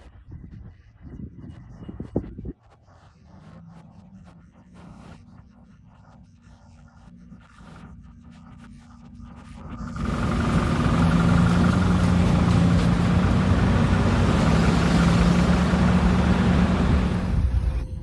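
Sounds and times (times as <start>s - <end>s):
vehicle engine humming: 9.8s - 18.0s
loud rushing noise: 9.9s - 17.6s.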